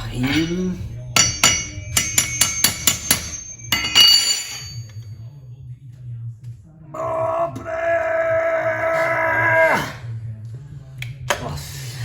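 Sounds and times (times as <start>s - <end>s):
loud ringing metal clank: 0.3s - 5.1s.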